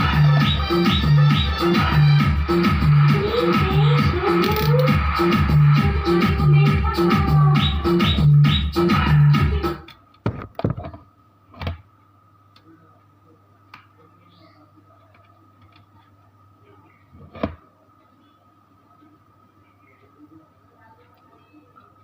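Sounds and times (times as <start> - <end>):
loud music from amplifier: 0.0 - 9.8
faint mains hum: 0.0 - 22.0.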